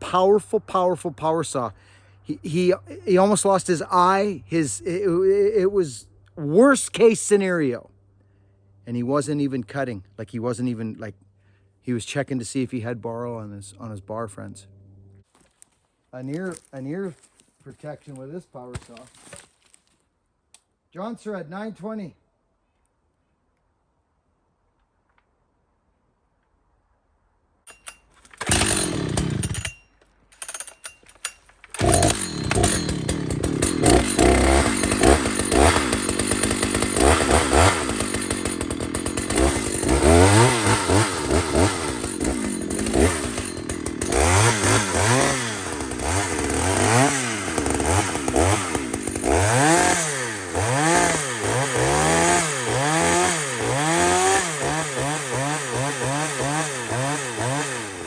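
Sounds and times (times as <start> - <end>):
chainsaw starting and revving: 2.4 - 5.8, 28.2 - 29.8, 31.6 - 58.0.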